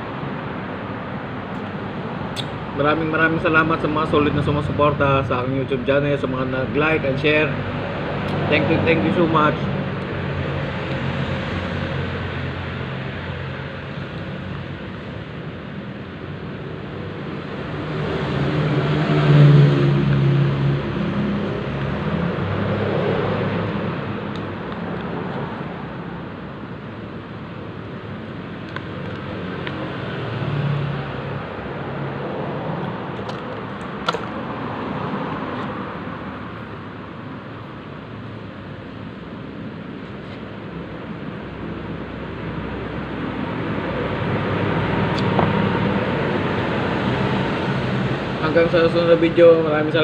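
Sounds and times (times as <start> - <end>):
road traffic: 0.0 - 50.0
sharp click: 2.3 - 2.6.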